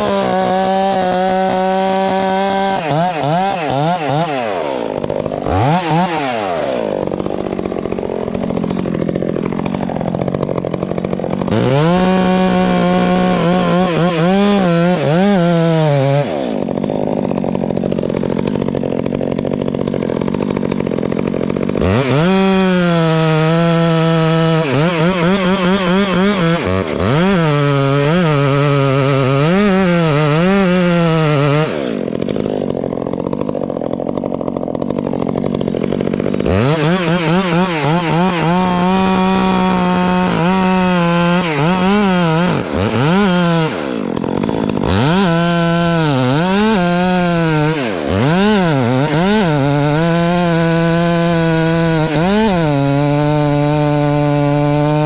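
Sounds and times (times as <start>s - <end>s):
chainsaw revving: 0.0s - 55.0s.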